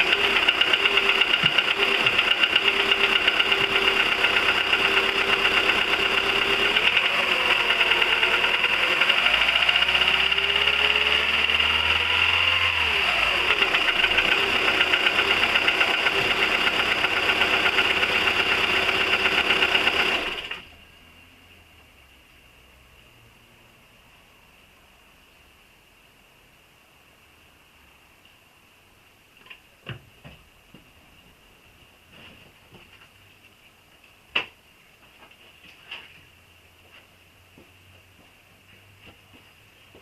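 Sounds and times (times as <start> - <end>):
fast steady engine ticking: 0.0 - 20.6
petrol engine running: 0.0 - 20.7.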